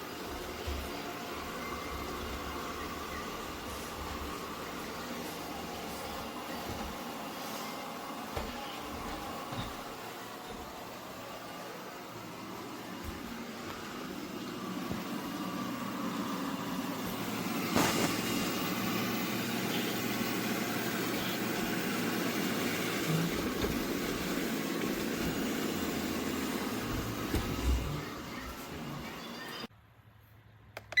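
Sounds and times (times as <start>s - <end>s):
robot vacuum whirring: 11.9s - 29.7s.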